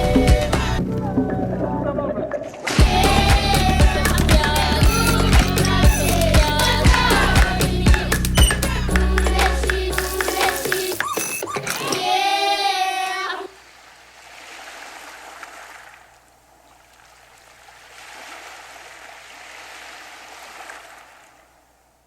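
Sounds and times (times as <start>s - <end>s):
soft wash of water: 12.7s - 22.0s.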